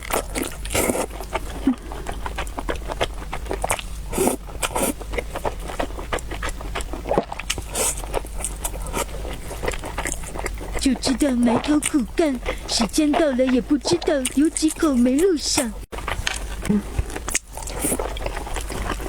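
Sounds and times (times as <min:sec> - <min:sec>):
chewing with wet mouth clicks: 0:00.0 - 0:19.0
slurping noodles: 0:00.0 - 0:19.0.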